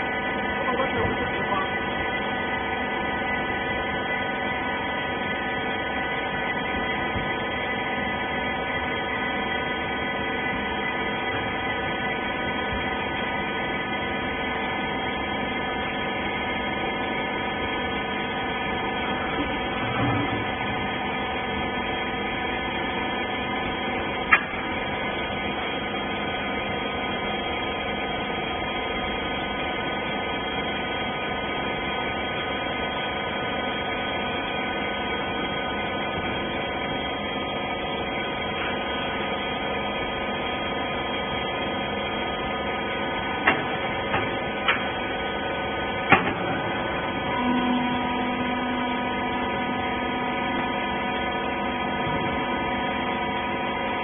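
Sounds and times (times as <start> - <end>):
hydraulic power unit humming: 0.0 - 54.0
low tone: 46.1 - 54.0.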